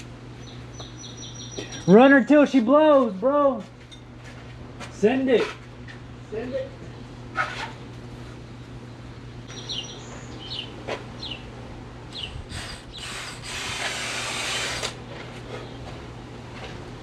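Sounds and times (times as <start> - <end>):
birds chirping: 0.3 - 2.2, 8.6 - 13.4
power drill boring: 12.6 - 15.0.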